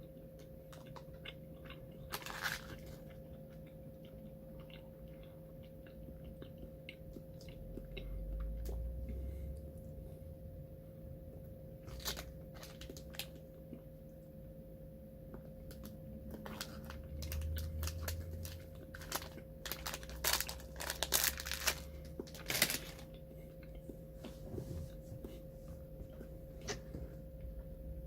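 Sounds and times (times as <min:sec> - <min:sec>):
faint electrical hum: 0:00.0 - 0:28.0
wrapper crinkling: 0:02.1 - 0:03.0, 0:11.8 - 0:13.4, 0:15.8 - 0:23.2.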